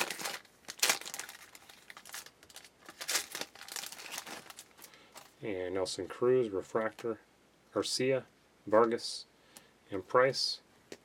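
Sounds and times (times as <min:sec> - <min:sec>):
wrapper crinkling and tearing: 0:00.0 - 0:05.3.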